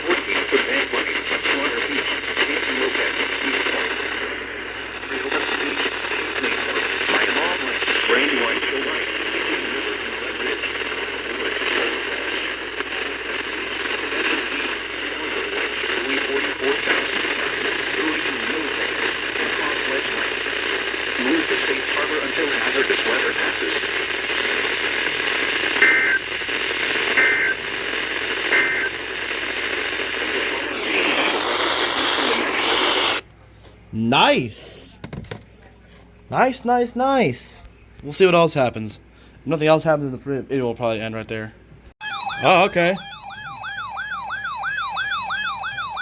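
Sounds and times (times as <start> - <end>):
radio static hiss: 0.0 - 33.2, 42.4 - 43.0
two-tone digital chirps: 42.0 - 43.7.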